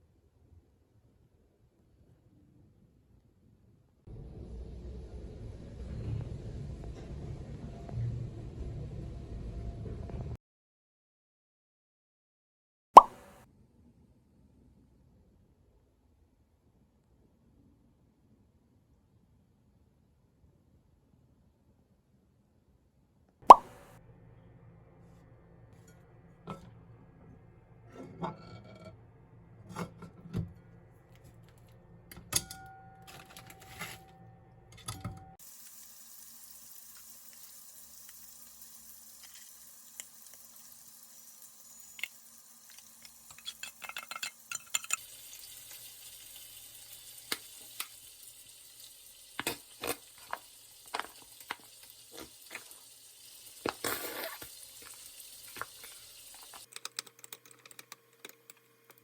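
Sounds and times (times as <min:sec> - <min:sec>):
utensils clinking against pots: 0:32.1 - 0:35.4, 0:36.8 - 0:59.0
food sizzling in a pan: 0:35.4 - 0:56.7.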